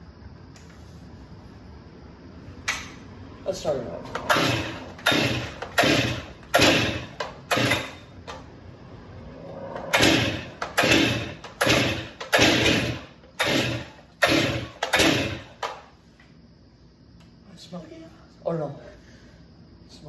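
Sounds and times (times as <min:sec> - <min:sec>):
chainsaw starter cord pulls: 0:04.1 - 0:08.4, 0:09.9 - 0:15.8.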